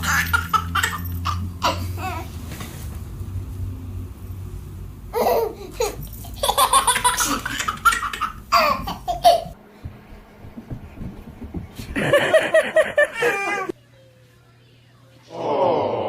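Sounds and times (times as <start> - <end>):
baby laughing: 0.0 - 2.3, 5.1 - 9.6, 12.2 - 13.7.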